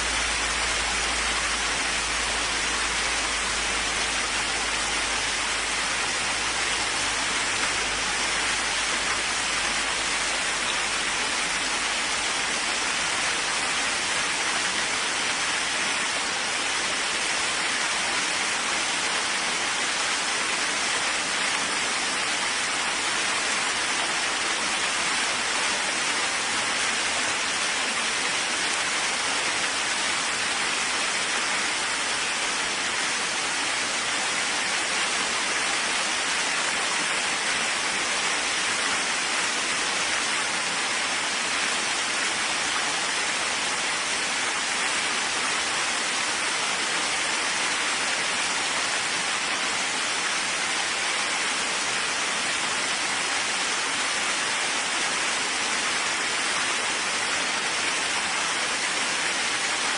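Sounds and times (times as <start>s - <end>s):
dense rain hissing: 0.0s - 59.9s.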